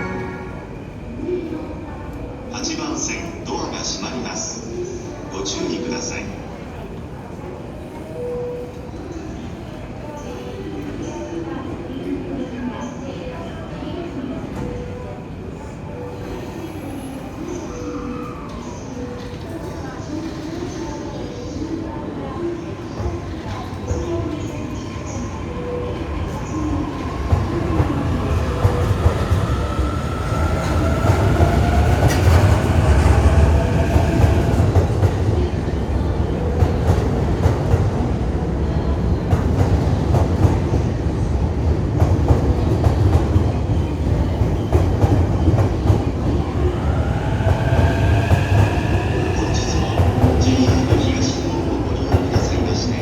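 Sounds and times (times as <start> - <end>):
train rumble: 22.2 - 53.0.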